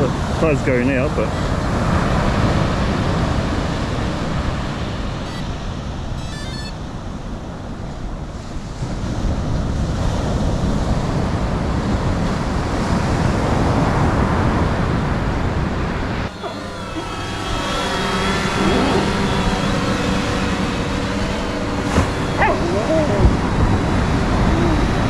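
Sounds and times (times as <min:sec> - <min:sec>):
high chirping: 0:05.2 - 0:07.0, 0:16.3 - 0:23.9.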